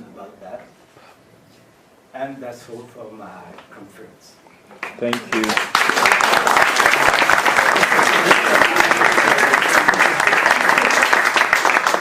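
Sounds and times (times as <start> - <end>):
audience applauding: 4.8 - 12.0.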